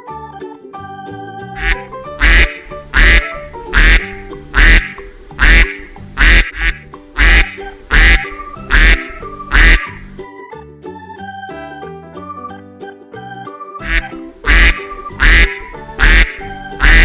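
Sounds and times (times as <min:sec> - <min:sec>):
organ music: 0:00.8 - 0:17.0
duck quacking: 0:01.6 - 0:10.1, 0:13.8 - 0:17.0.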